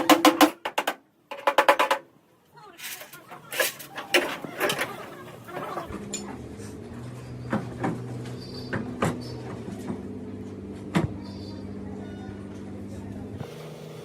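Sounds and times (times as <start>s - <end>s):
sharp knocks or clanks: 0.0s - 2.1s.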